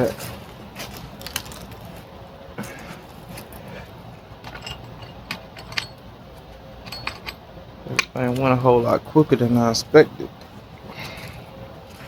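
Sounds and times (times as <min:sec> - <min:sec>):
low background hum: 0:00.0 - 0:12.0
metallic clinks of tools: 0:04.5 - 0:06.0, 0:06.8 - 0:07.4.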